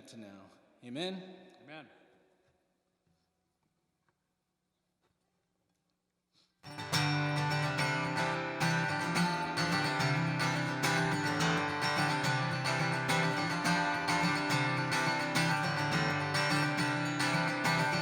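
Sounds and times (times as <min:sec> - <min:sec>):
acoustic guitar strumming: 0:06.6 - 0:18.0.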